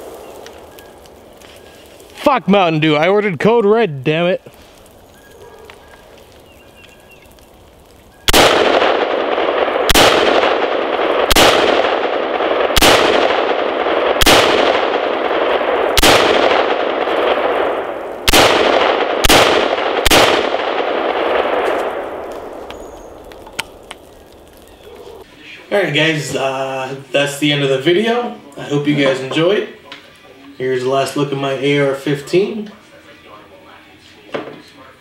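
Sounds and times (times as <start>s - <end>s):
rifle shots: 8.3s - 23.8s.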